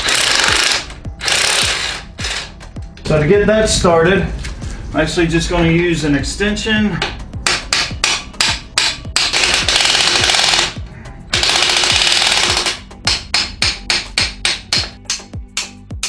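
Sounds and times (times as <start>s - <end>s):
impact wrench rattling: 0.0s - 2.5s, 7.5s - 15.0s
electronic beat music: 0.0s - 4.3s, 5.5s - 16.0s.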